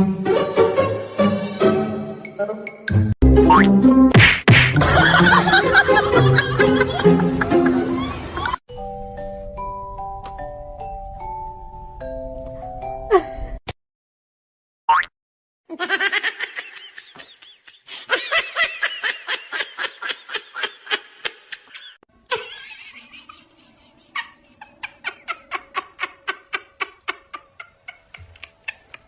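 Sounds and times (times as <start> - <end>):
pulsed laughter: 4.8 - 8.6, 15.7 - 29.0.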